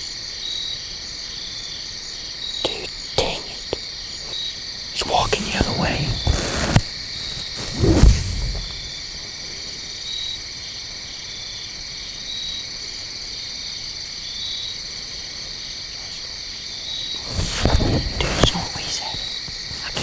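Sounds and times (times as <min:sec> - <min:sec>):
low rustle or bump: 0:05.6 - 0:09.0.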